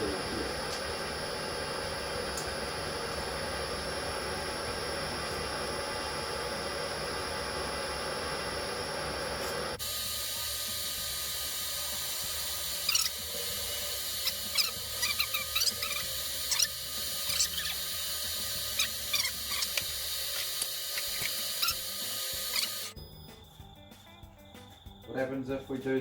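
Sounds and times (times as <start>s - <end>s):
metal lathe running: 0.0s - 23.0s
short high squeaks: 12.8s - 13.2s, 14.2s - 17.9s, 18.7s - 19.8s, 20.4s - 23.0s.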